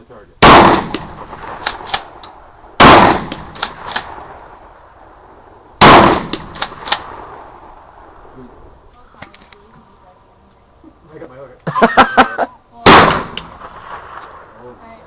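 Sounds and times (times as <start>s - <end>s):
shotgun shots: 0.4s - 4.6s, 5.8s - 7.8s, 12.8s - 14.8s
faint sharp cracks: 0.5s - 4.4s, 5.8s - 7.8s, 12.9s - 14.5s.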